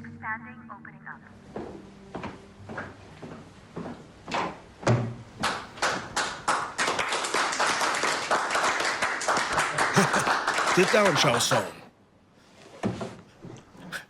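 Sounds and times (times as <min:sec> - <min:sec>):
group of people clapping: 0:05.4 - 0:11.8.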